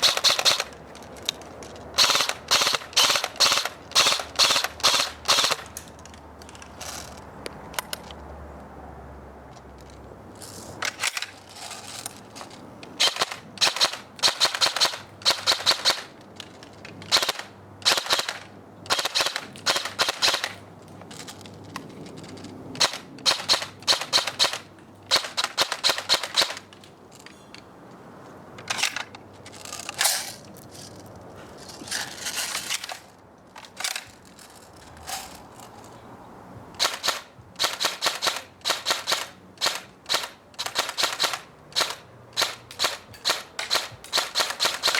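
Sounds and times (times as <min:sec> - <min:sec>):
airsoft rifle firing bursts: 0:00.0 - 0:00.8, 0:02.0 - 0:05.8, 0:13.0 - 0:16.1, 0:17.1 - 0:20.6, 0:22.8 - 0:26.7, 0:36.8 - 0:44.9.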